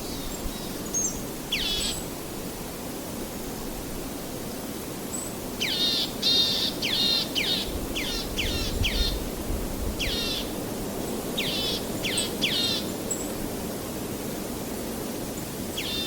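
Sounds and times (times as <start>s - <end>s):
songbird calling: 0.0s - 2.1s, 5.1s - 9.2s, 10.0s - 10.6s, 11.4s - 13.3s, 15.7s - 16.0s.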